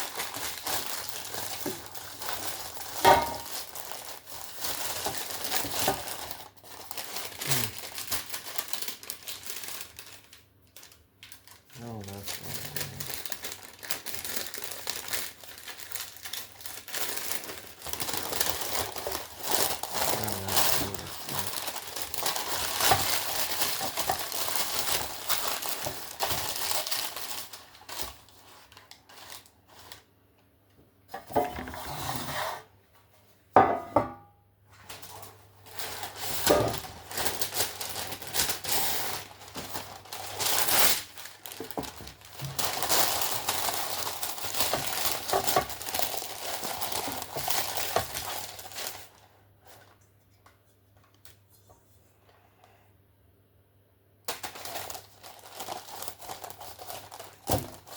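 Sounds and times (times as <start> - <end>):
baking paper crinkling and tearing: 0.0 - 30.1, 34.7 - 51.4, 54.3 - 57.9
metal pans clattering: 3.0 - 3.6.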